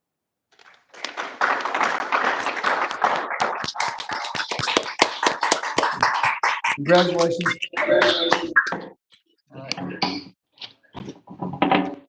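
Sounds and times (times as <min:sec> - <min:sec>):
people clapping: 0:00.5 - 0:09.0.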